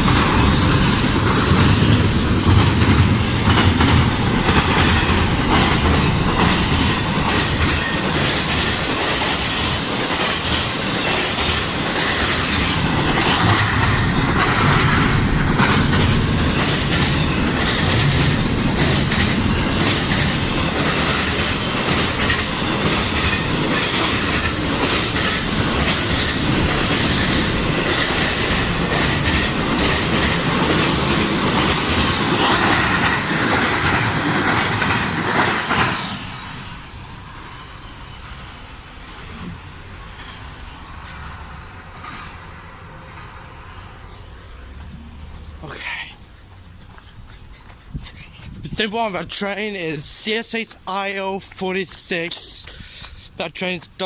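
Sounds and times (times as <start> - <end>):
wheels clicking over rail joints: 0.0 - 36.7
freight train rolling past: 0.0 - 54.0.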